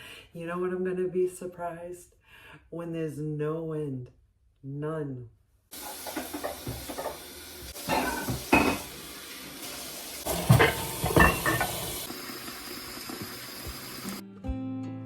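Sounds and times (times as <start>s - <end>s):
running water: 5.7s - 14.2s
dishes clinking: 5.8s - 9.0s, 10.3s - 12.1s.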